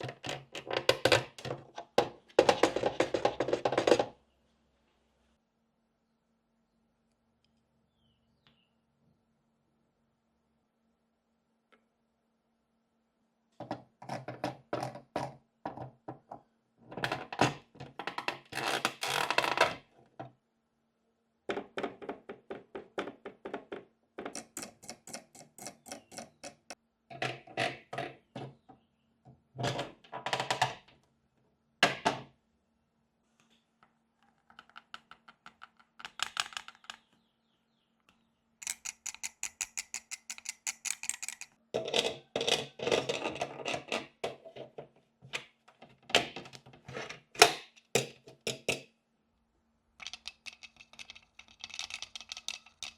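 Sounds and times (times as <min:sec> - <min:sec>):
scratching and tapping on toy pieces: 0:00.0 - 0:04.1, 0:21.5 - 0:28.6, 0:33.8 - 0:37.2, 0:38.6 - 0:48.9, 0:50.0 - 0:52.9.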